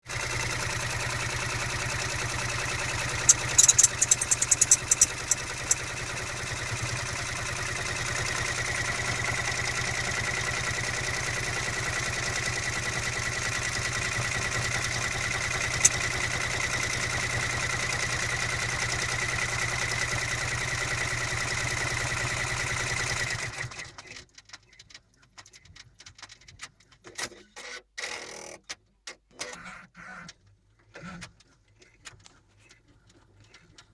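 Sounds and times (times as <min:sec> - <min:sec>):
sharp machine clicks: 0:03.2 - 0:06.9
high-pitched squeak: 0:03.3 - 0:05.8
embroidery machine stitching: 0:03.3 - 0:07.2.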